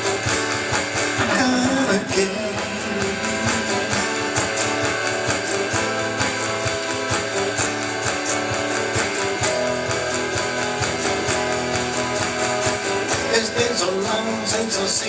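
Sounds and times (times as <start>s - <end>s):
steady drum beat: 0.0s - 15.0s
strummed and picked guitar: 0.0s - 15.0s.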